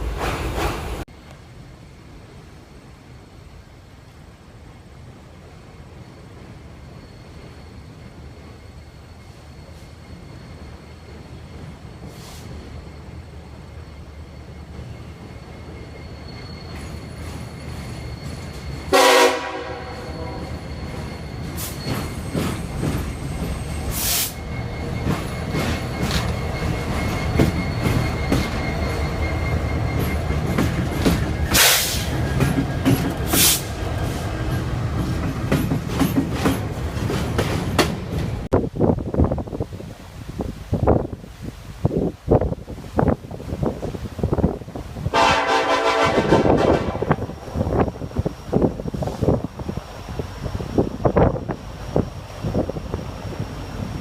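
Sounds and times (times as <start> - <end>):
train rumble: 0.0 - 54.0
train horn blast: 18.9 - 20.5, 45.1 - 47.2
wheels clanking on rails: 19.7 - 38.5.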